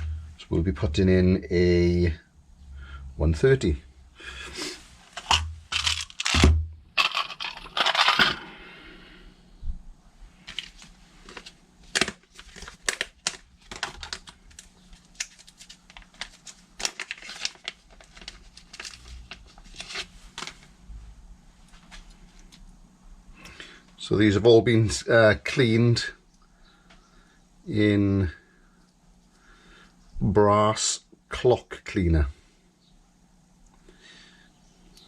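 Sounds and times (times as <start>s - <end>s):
small metal parts clinking: 7.0s - 8.4s
rustle and crinkle: 10.3s - 22.8s.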